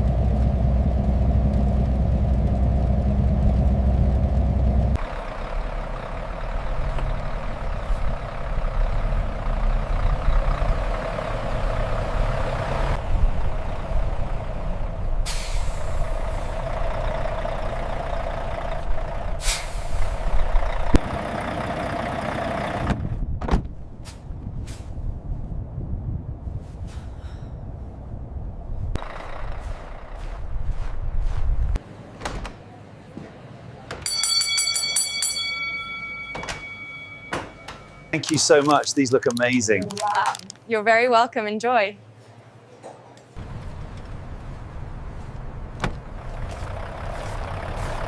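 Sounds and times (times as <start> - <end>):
truck running noise: 0.0 - 23.3, 29.0 - 32.1, 35.3 - 41.3, 43.4 - 48.0
truck engine rumble: 0.0 - 26.5, 27.2 - 42.2, 43.4 - 48.0
air-brake hisses: 15.2 - 16.6, 19.4 - 20.4
clicks: 37.3 - 40.6.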